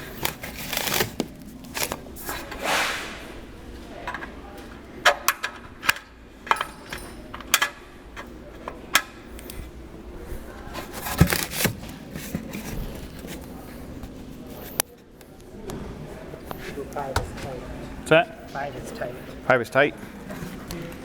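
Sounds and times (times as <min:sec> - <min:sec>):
sheet metal and tools clinking: 0:04.0 - 0:09.2.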